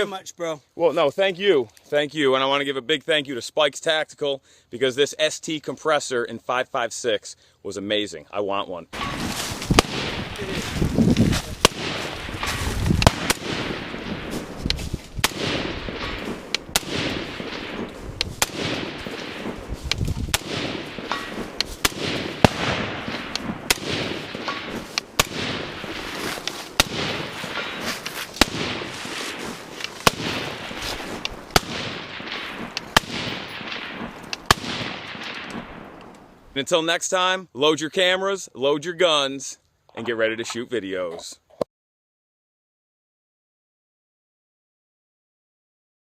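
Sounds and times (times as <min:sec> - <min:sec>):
rifle single shots: 0:09.0 - 0:36.2.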